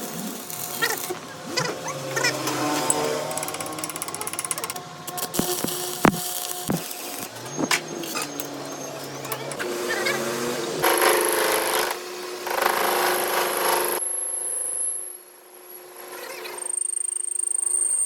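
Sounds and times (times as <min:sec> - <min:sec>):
power tools working on metal: 0:00.0 - 0:14.0.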